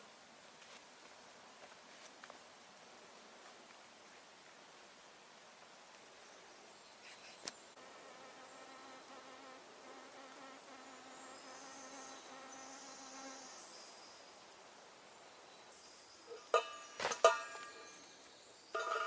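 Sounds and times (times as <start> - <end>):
flying insect buzzing: 7.8 - 13.6.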